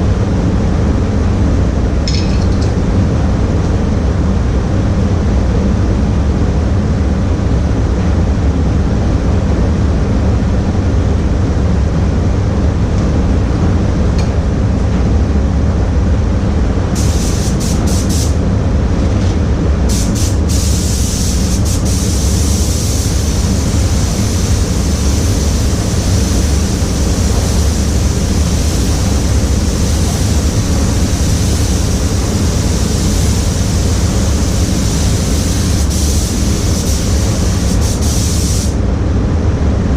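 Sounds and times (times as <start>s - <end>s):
low machine rumble: 0.0s - 39.9s
paint spray gun hissing: 17.0s - 18.4s, 19.9s - 38.8s.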